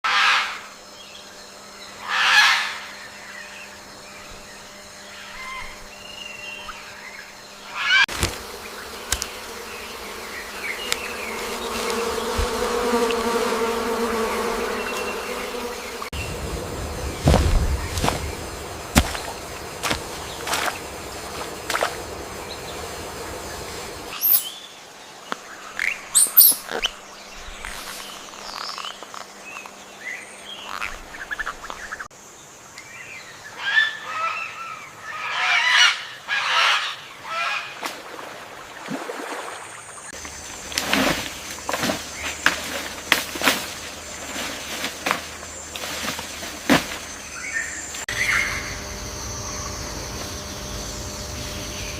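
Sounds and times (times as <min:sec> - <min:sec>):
forest ambience: 0:00.0 - 0:51.9
animal and bird calls: 0:01.9 - 0:24.8, 0:25.6 - 0:32.1, 0:33.3 - 0:37.8, 0:47.0 - 0:51.9.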